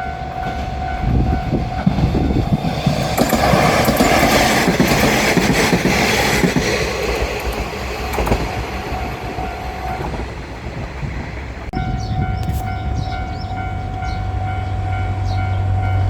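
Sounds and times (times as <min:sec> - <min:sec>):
train wheels clattering over joints: 0:00.4 - 0:11.7.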